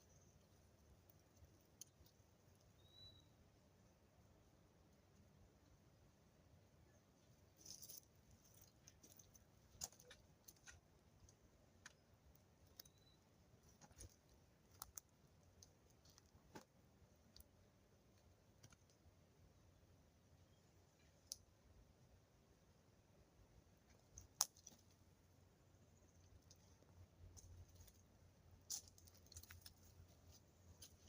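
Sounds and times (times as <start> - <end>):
background hiss: 0.0 - 31.0
faint sharp clicks and taps: 7.6 - 12.9.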